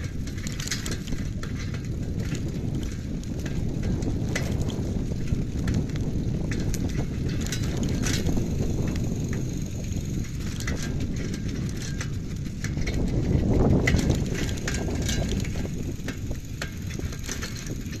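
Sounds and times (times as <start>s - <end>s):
bike clicks and rattles: 0.0s - 18.0s
bike riding rumble: 0.0s - 18.0s.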